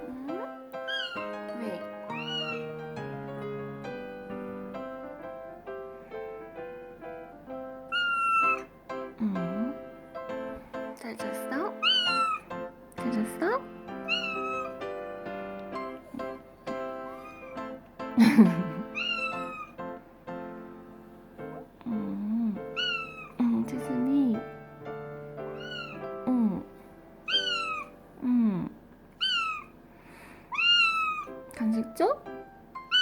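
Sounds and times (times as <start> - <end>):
background music: 0.0 - 28.7, 31.0 - 33.0
light keyboard tune: 0.0 - 28.7
cat meowing: 0.8 - 2.9, 7.9 - 8.7, 11.7 - 12.5, 14.0 - 14.9, 17.1 - 17.6, 18.9 - 19.8, 22.7 - 23.4, 25.5 - 26.1, 27.3 - 28.0, 29.2 - 29.7, 30.5 - 31.4.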